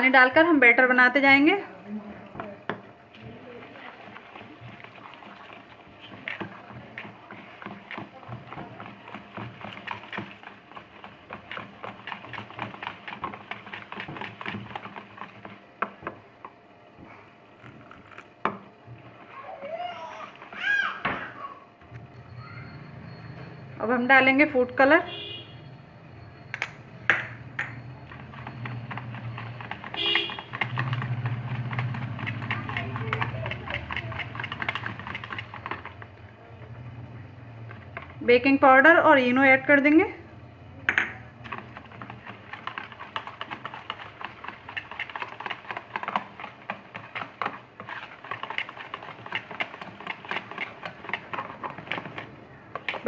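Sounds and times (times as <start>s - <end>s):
batter being stirred: 0.0s - 21.0s, 26.6s - 40.3s, 40.9s - 53.0s
brief ringing tone: 22.1s - 23.8s.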